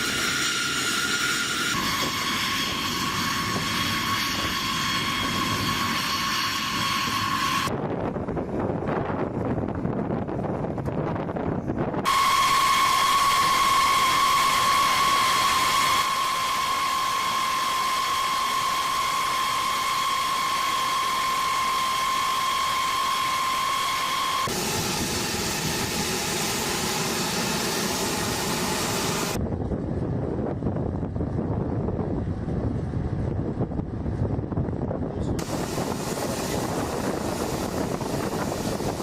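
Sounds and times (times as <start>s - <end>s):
high-pitched engine whine: 0.0s - 9.5s, 11.6s - 39.0s
jet engine low rumble: 0.0s - 39.0s
rough engine noise: 11.7s - 29.4s, 35.0s - 39.0s
jet engine hiss: 12.1s - 29.4s, 35.4s - 39.0s.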